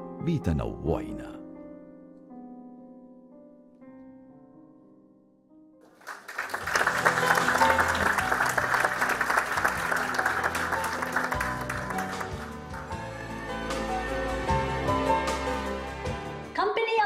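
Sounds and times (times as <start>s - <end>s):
audience applauding: 5.9s - 13.3s
music playing: 6.3s - 16.7s.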